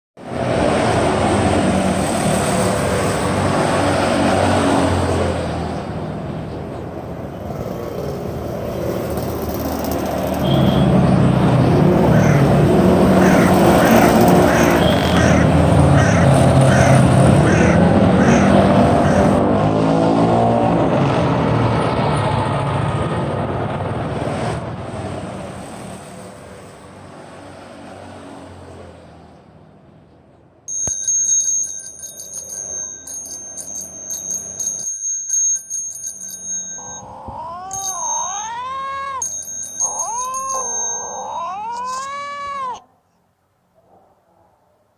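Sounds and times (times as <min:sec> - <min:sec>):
traffic noise: 0:00.2 - 0:44.9
stuttering high-pitched ringing: 0:30.7 - 0:41.5
cat meowing: 0:37.0 - 0:39.2, 0:40.0 - 0:42.9.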